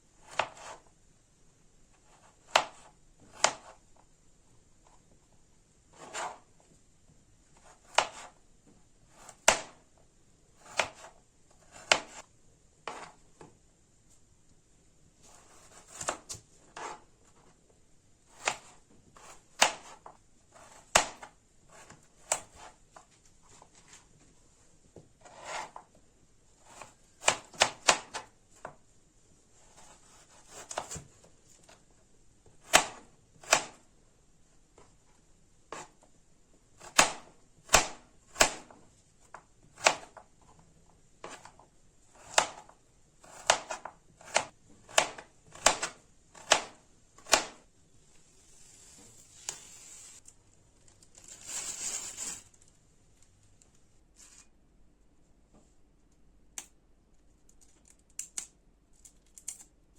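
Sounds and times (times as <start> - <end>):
knife chopping on cutting board: 2.5 - 3.8, 6.0 - 6.4, 7.9 - 8.3, 10.6 - 12.2, 12.9 - 13.2, 15.3 - 17.0, 18.4 - 22.7, 39.8 - 40.2, 42.2 - 47.6
knife scraping board: 5.9 - 6.5, 10.6 - 12.2, 12.8 - 13.2, 15.2 - 17.4, 25.2 - 25.8, 48.4 - 50.2, 54.2 - 54.5.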